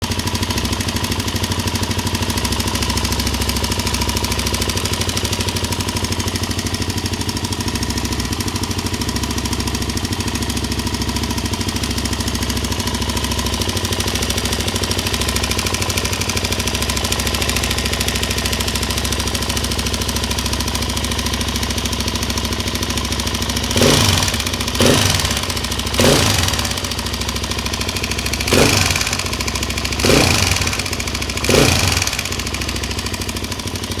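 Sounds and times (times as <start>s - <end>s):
engine idling with ticking: 0.0s - 34.0s
engine revving in bursts: 23.7s - 27.0s, 28.4s - 32.6s.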